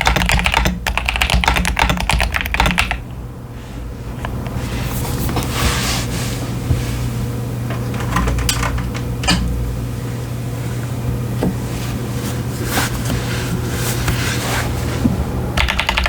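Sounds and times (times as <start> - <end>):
keyboard keystrokes clacking: 0.0 - 3.0, 15.6 - 16.0.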